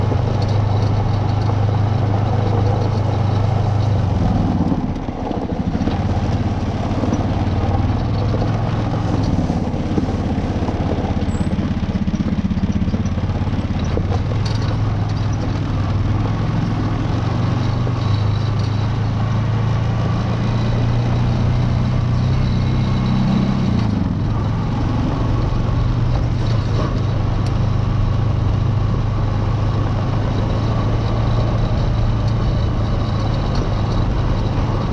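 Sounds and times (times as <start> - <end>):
vehicle engine running: 0.0 - 34.9.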